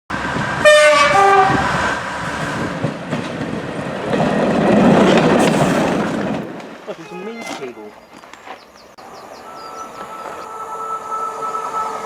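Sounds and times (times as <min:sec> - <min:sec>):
train rumbling past: 0:00.1 - 0:07.6, 0:08.7 - 0:12.0
train two-tone horn: 0:00.6 - 0:01.7, 0:09.4 - 0:12.0.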